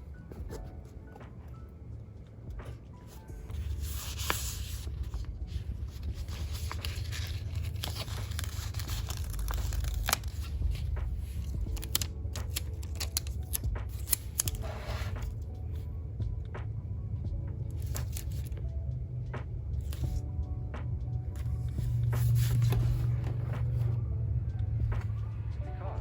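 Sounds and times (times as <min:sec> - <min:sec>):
stickers peeling and crinkling: 0:03.5 - 0:15.5, 0:17.7 - 0:18.6, 0:19.8 - 0:20.2, 0:21.3 - 0:24.0.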